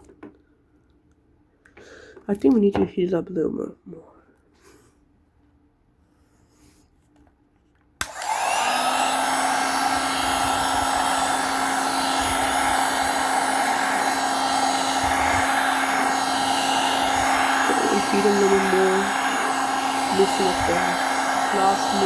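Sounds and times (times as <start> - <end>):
hot-air blower switch click: 8.0 - 8.9
hot-air blower rushing and whining: 8.0 - 22.0.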